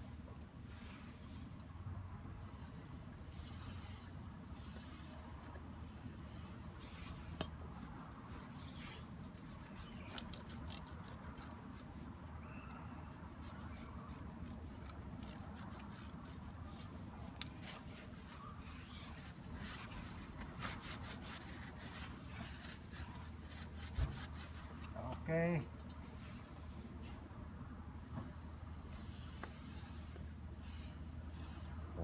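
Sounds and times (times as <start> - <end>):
drive chain being scrubbed: 9.1 - 11.9, 13.1 - 16.8.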